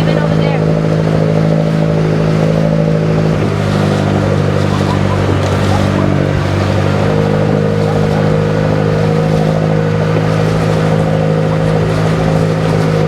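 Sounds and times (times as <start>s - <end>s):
boat engine humming: 0.0s - 13.0s.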